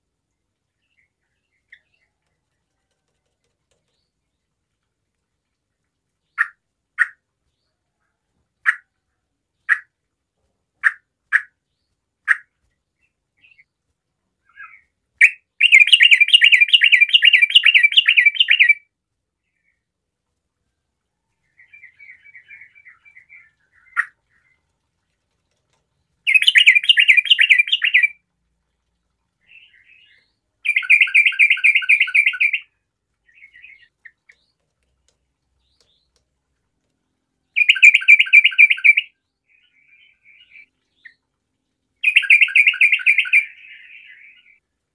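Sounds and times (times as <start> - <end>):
bird chirping and chattering: 14.5 - 18.8, 26.2 - 28.1, 29.5 - 32.6, 37.6 - 39.1, 42.0 - 44.6.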